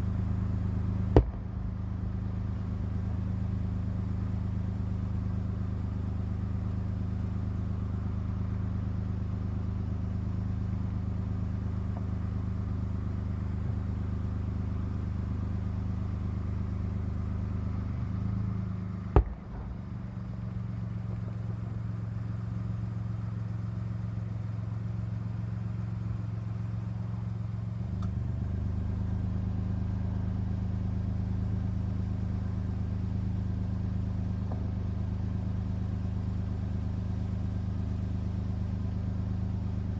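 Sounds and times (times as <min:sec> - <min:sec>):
low motor hum: 0:00.0 - 0:39.9
sharp knock: 0:01.2 - 0:01.5.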